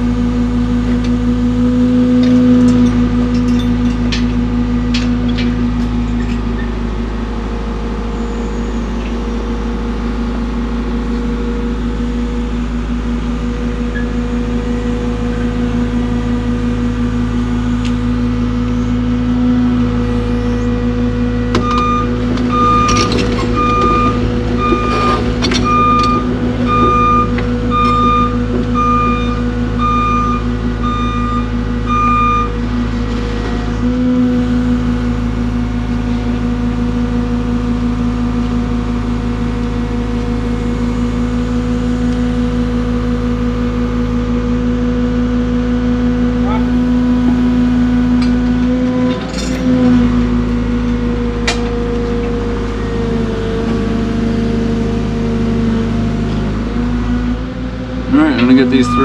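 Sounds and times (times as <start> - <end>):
diesel engine running: 0.0 - 59.0
travel alarm beeping: 21.5 - 32.6, 58.4 - 59.0.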